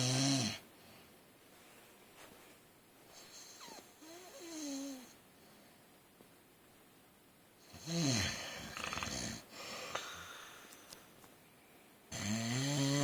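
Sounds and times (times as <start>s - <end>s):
man snoring: 0.0s - 0.6s, 7.7s - 9.5s, 12.1s - 13.0s
weak breath: 9.5s - 11.1s.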